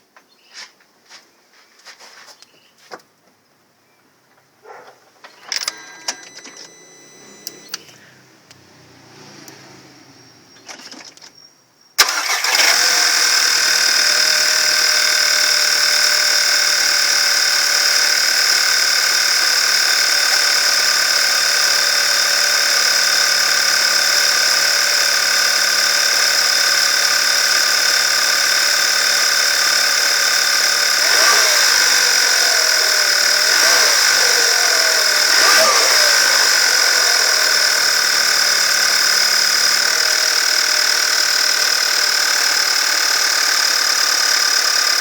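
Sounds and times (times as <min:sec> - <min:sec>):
high engine whine: 0:05.4 - 0:10.9, 0:20.6 - 0:45.0
car engine starting and idling: 0:05.4 - 0:11.2, 0:12.0 - 0:45.0.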